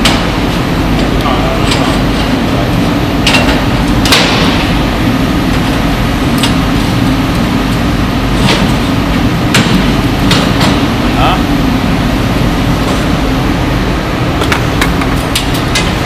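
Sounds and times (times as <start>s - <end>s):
industrial machinery drone: 0.0s - 16.0s
sharp metallic knocks: 3.2s - 4.8s.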